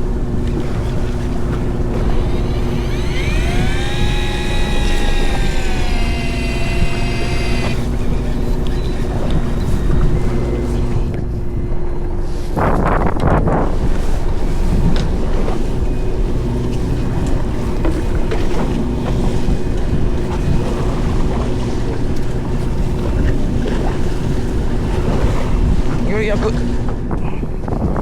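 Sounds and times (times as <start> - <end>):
boat engine rumble: 0.0 - 12.6.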